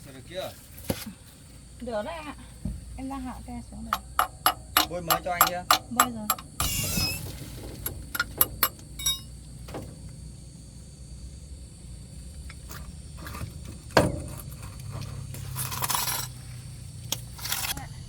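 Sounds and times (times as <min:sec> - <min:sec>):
low steady hum: 0:00.0 - 0:18.0
metal clinks and knocks: 0:03.9 - 0:09.4.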